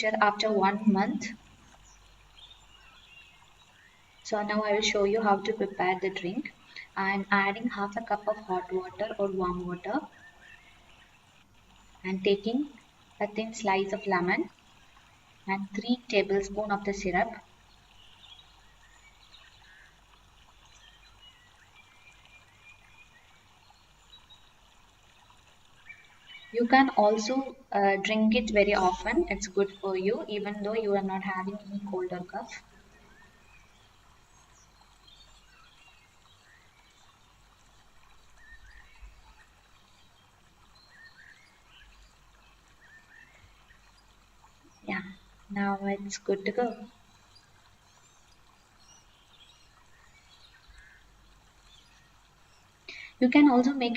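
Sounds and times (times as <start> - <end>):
low steady hum: 0.0 - 40.9
faint background hiss: 0.0 - 53.9.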